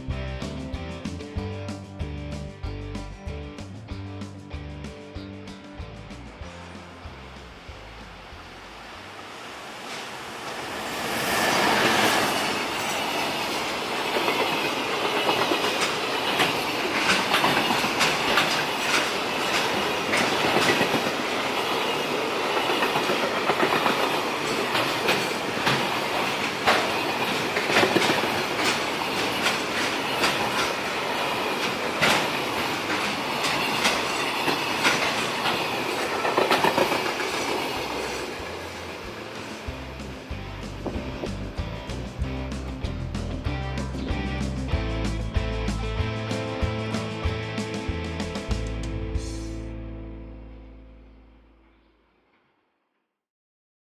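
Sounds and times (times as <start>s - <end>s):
freight train passing: 2.7s - 49.5s
wheels clacking over rail joints: 6.7s - 44.0s.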